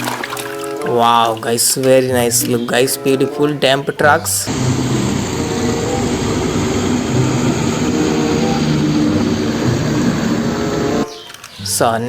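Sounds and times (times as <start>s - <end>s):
loud engine-like drone: 4.3s - 11.2s.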